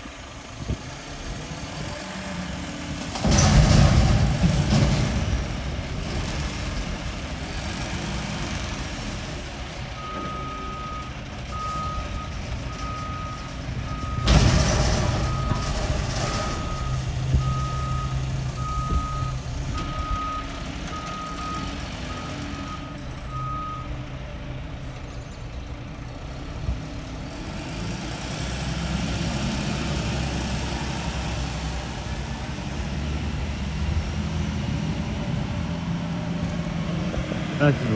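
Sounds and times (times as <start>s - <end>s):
diesel engine running: 0.0s - 37.9s
truck backup alarm beeping: 10.0s - 24.2s.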